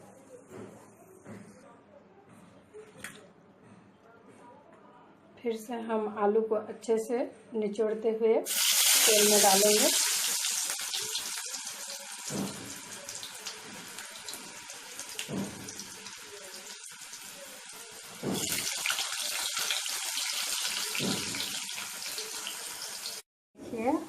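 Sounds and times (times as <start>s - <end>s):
potato slices sizzling in hot oil: 8.5s - 23.2s.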